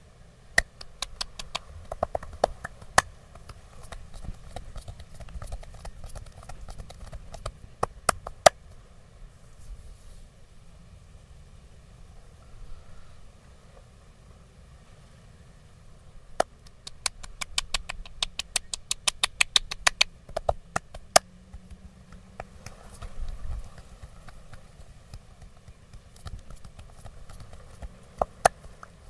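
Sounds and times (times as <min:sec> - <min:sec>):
massage strokes clicking: 0:00.6 - 0:08.6, 0:16.4 - 0:29.0.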